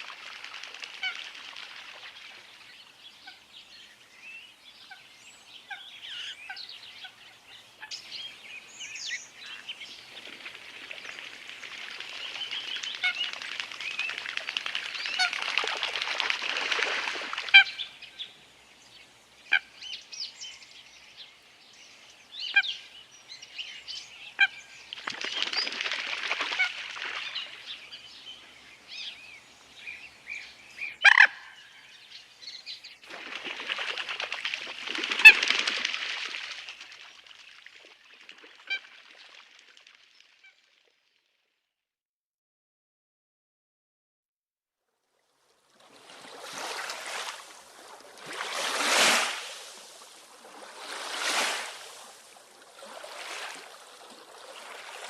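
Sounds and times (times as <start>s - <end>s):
birds calling sharp cries: 4.8s - 10.4s, 26.5s - 32.8s
water rushing: 45.9s - 55.0s.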